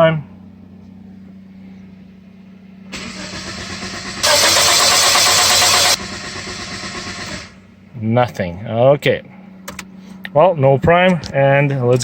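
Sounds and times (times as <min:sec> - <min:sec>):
starter cranking engine: 0:02.9 - 0:07.7.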